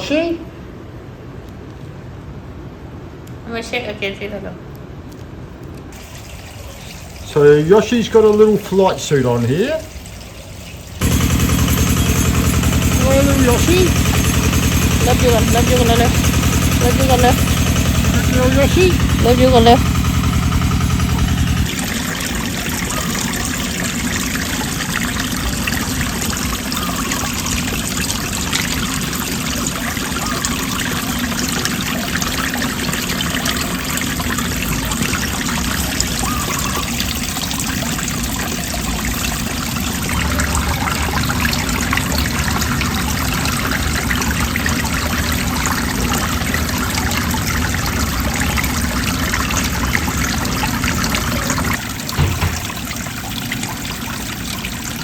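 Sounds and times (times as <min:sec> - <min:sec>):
motorcycle engine running: 0:11.0 - 0:21.8, 0:52.2 - 0:52.8.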